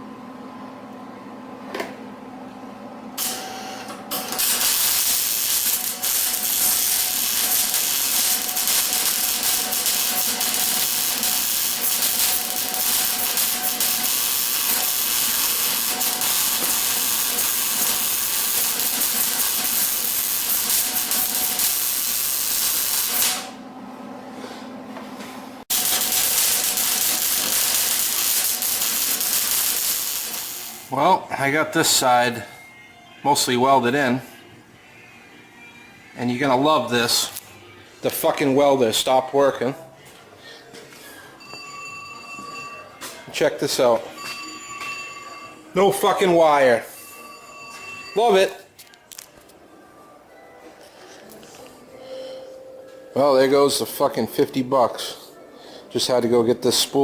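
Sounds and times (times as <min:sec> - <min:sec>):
welder crackling hiss: 0:04.1 - 0:23.5, 0:25.7 - 0:30.9.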